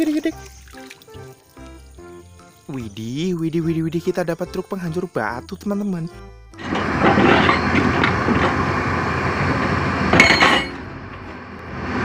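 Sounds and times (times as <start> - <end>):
toy truck parts rattling: 6.6 - 8.7.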